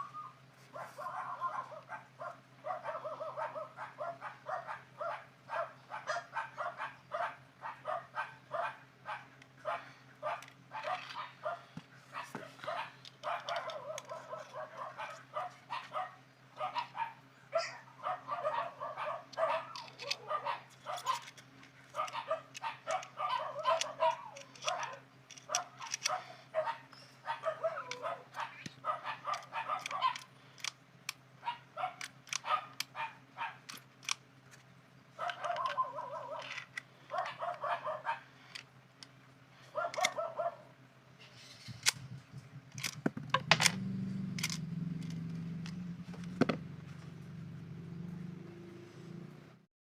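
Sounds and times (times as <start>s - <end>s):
dog barking and yipping: 0.0s - 30.3s, 31.4s - 33.8s, 35.2s - 38.3s, 39.7s - 40.7s
sharp clicks: 41.8s - 46.5s.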